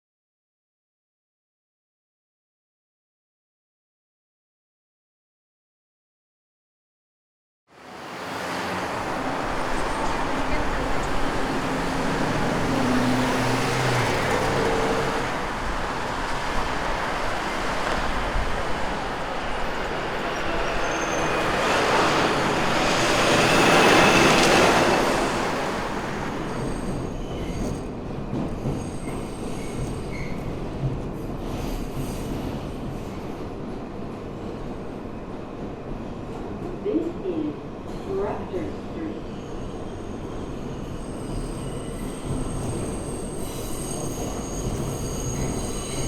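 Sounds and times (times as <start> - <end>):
train rumbling past: 7.8 - 46.0
faint high squeals: 19.6 - 27.8, 39.3 - 46.0.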